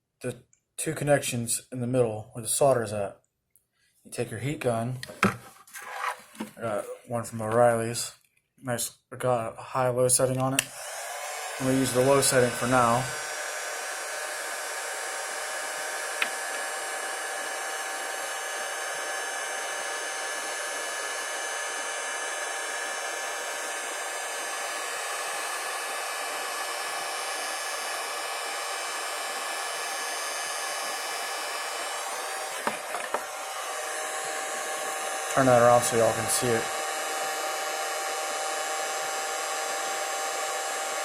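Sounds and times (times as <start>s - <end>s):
heat gun blowing air: 10.5s - 41.0s.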